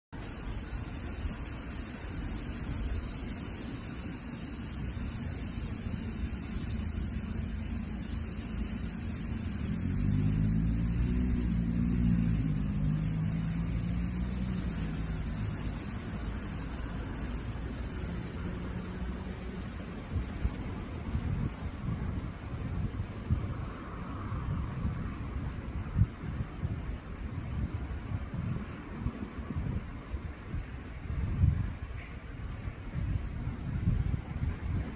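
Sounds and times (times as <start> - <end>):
insect chorus: 0.1 - 34.9
vehicle engine hum: 5.4 - 21.0.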